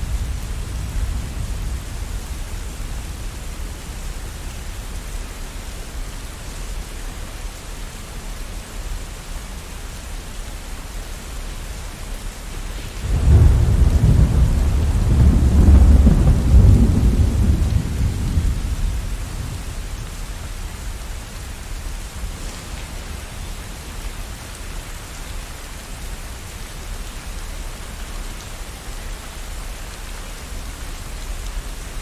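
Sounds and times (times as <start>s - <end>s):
thunder rumbling: 0.0s - 4.9s, 12.8s - 25.0s
steady rain: 0.0s - 32.0s.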